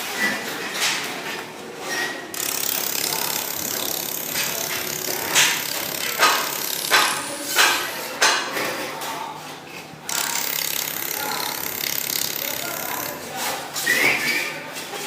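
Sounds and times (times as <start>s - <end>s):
welding pulse snaps: 2.4s - 8.0s
welding machine hiss: 2.4s - 8.1s.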